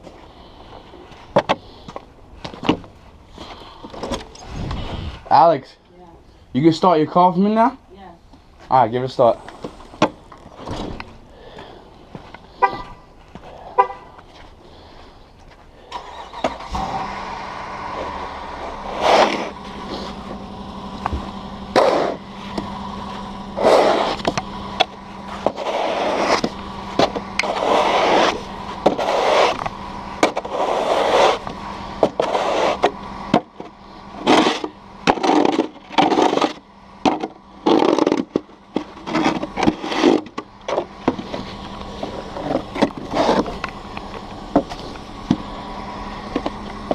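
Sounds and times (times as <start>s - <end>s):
car engine idling: 0.0s - 46.9s
car horn chirping: 12.5s - 14.2s
snow shovel scraping snow: 16.7s - 20.3s, 21.7s - 22.6s, 23.6s - 24.2s, 25.2s - 29.6s, 30.2s - 31.5s, 32.1s - 32.9s, 34.2s - 36.6s, 39.1s - 40.2s, 41.4s - 43.6s.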